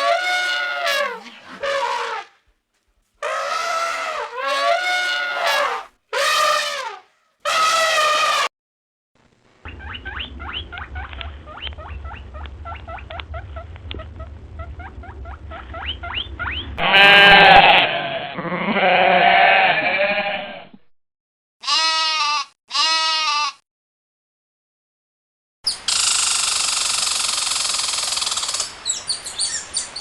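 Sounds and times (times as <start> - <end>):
bleating calls: 3.2 - 8.5, 16.8 - 20.7, 21.6 - 23.6
low hum: 9.2 - 17.6.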